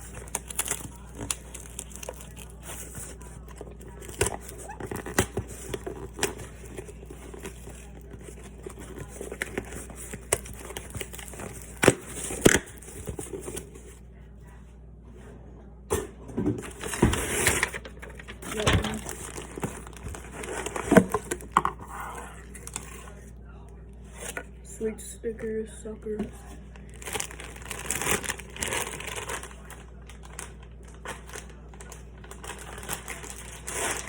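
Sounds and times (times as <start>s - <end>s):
packaging crinkling and tearing: 0.0s - 13.9s, 16.6s - 21.6s, 26.8s - 34.0s.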